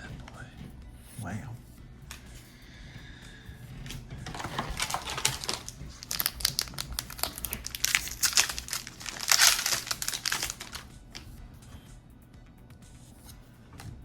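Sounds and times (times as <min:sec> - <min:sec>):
plastic wrapper crinkling: 0:04.2 - 0:11.0.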